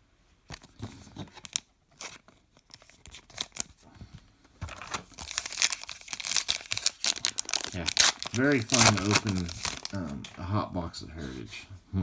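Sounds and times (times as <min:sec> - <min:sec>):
wrapper tearing and crinkling: 0:01.3 - 0:03.8, 0:04.7 - 0:10.1.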